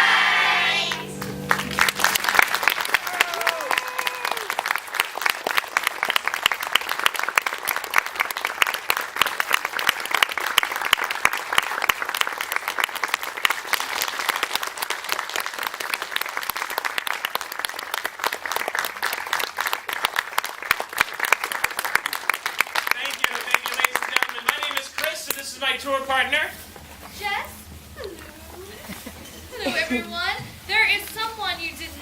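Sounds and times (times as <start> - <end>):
audience applauding: 0.7 - 26.5.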